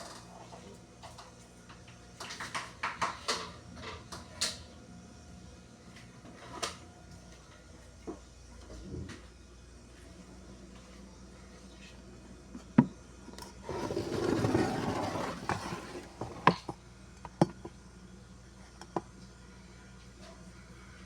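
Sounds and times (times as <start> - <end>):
rubbing and scraping: 13.6 - 16.6.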